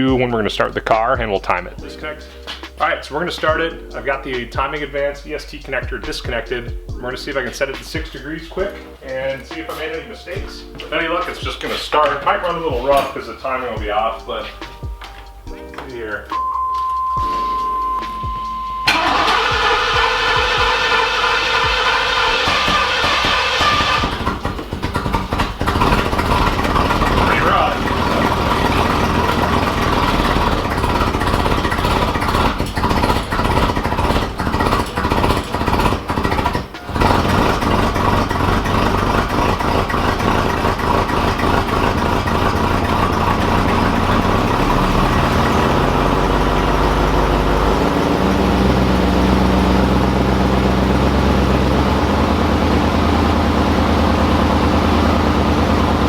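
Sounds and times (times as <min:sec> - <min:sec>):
car engine idling rough: 0:00.0 - 0:13.2, 0:17.3 - 0:56.0.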